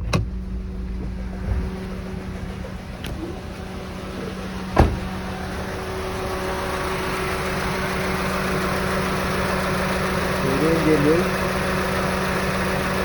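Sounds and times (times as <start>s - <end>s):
car engine idling roughly: 0.0s - 13.0s
sharp thump: 4.7s - 5.2s.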